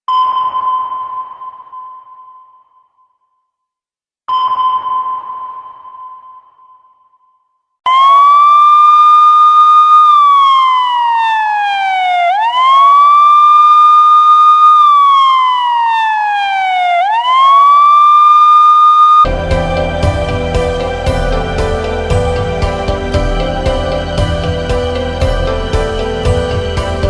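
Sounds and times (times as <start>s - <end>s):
wailing siren: 7.9s - 27.0s.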